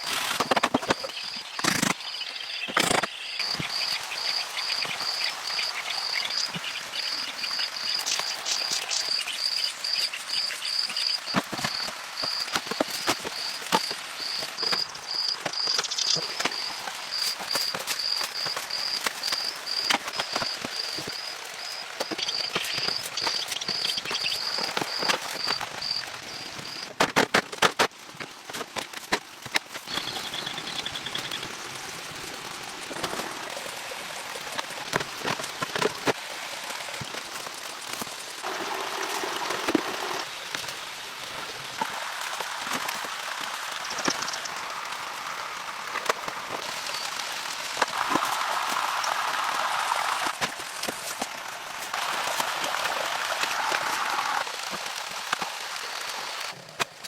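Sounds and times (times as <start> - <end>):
insect chirping: 0.8 - 27.0, 29.9 - 31.5, 43.8 - 44.8.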